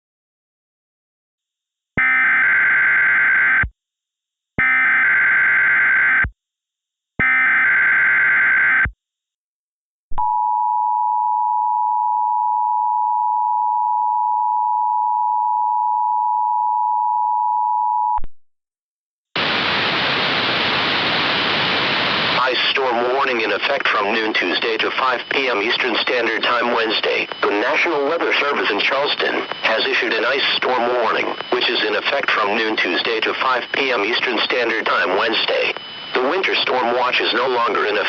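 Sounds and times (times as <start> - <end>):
static hiss: 19.4 - 22.8
digital data screech: 23.5 - 38.0.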